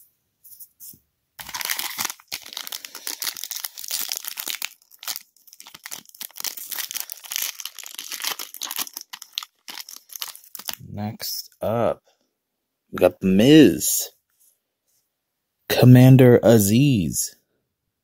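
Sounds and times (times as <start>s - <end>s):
wrapper tearing and crinkling: 1.4s - 10.8s.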